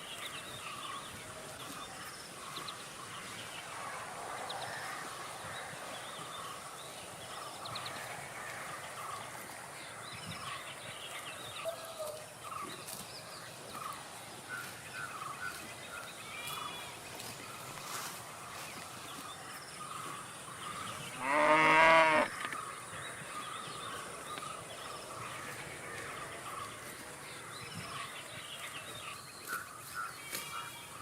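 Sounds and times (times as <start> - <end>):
cow mooing: 21.2 - 22.4.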